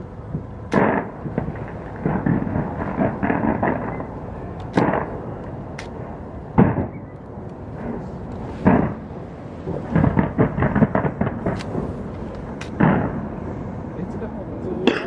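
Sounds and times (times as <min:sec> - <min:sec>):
fireworks bangs: 0:00.3 - 0:04.2, 0:04.8 - 0:05.3, 0:05.9 - 0:07.1, 0:07.8 - 0:13.5
fireworks popping and crackling: 0:00.3 - 0:07.1, 0:07.7 - 0:13.4.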